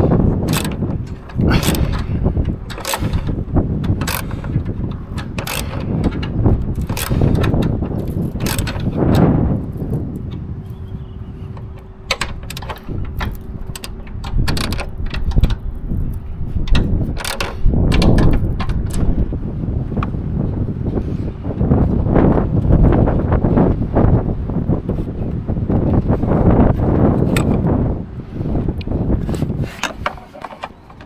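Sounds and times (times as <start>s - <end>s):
clicks and knocks of tools: 0.0s - 10.8s, 11.6s - 19.2s, 29.2s - 31.0s.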